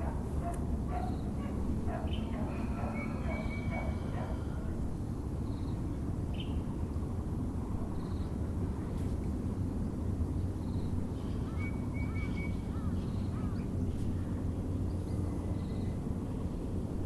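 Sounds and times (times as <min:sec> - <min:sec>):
birds calling: 0:00.0 - 0:04.8, 0:11.2 - 0:16.0
low background rumble: 0:00.0 - 0:17.0.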